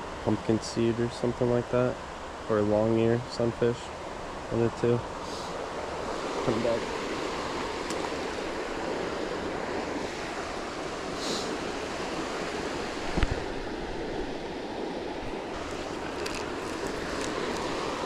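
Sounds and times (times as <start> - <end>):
water rushing through spillway: 15.4 - 18.0.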